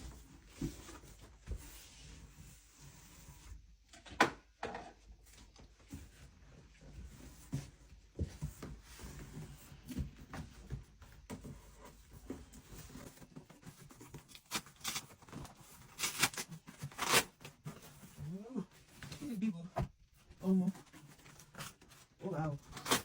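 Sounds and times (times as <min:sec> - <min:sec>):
packaging rustling: 0:13.7 - 0:17.6.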